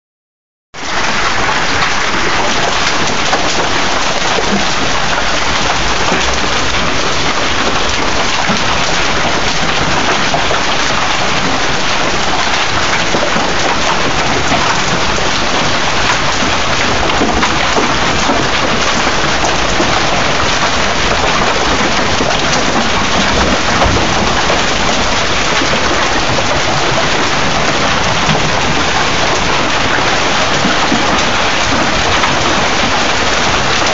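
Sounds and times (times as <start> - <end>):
hailstones pattering on surfaces: 0.8 - 33.9.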